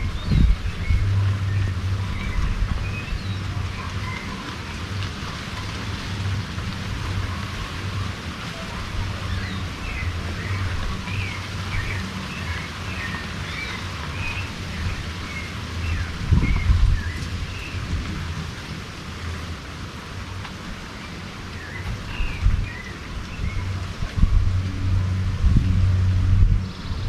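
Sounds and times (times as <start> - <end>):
low hum: 0.0 - 18.4, 21.8 - 27.0
wind gusts on microphone: 0.0 - 27.0
small birds chirping: 8.7 - 17.9.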